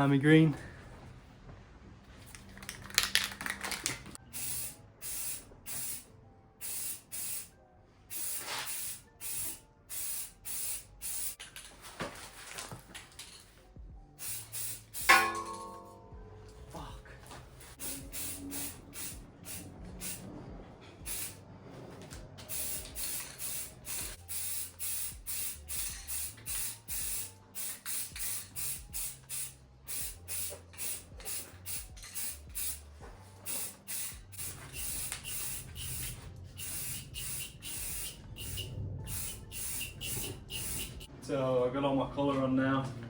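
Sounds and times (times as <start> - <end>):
spray paint hissing in bursts: 4.2 - 7.5, 8.1 - 11.4, 14.1 - 15.1, 17.6 - 20.2, 21.1 - 21.4, 22.4 - 41.1.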